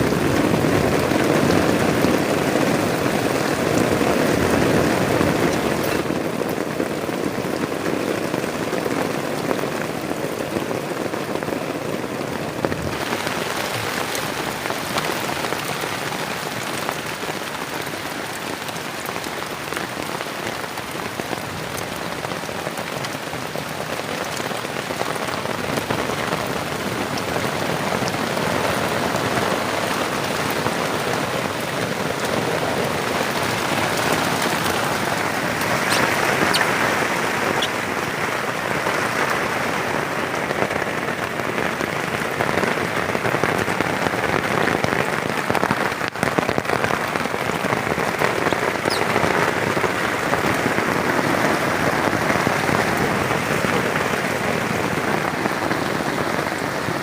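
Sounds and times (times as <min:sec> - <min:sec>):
heavy rain falling: 0:00.0 - 0:57.0
sharp drip clicks: 0:35.6 - 0:36.9.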